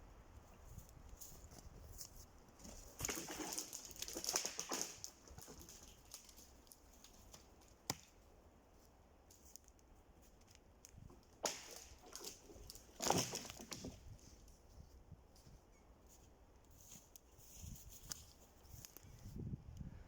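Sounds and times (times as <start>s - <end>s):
sharp wood crack: 2.6s - 8.2s, 10.4s - 14.2s
axe chopping wood: 11.4s - 12.0s.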